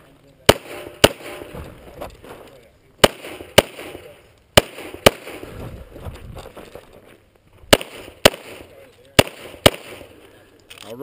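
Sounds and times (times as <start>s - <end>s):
pistol shots: 0.5s - 1.6s, 3.0s - 5.6s, 7.7s - 10.2s.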